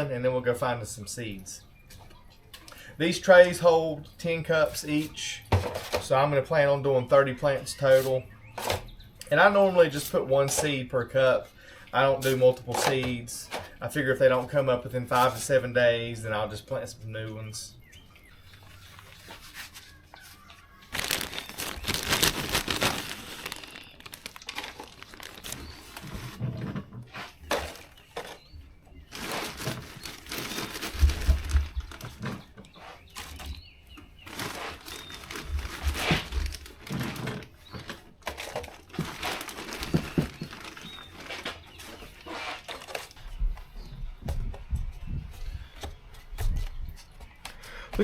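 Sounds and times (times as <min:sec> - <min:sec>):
plastic crinkling: 0:18.5 - 0:26.4, 0:29.0 - 0:33.6, 0:34.2 - 0:43.2
dirt scooping and pouring: 0:20.9 - 0:32.1.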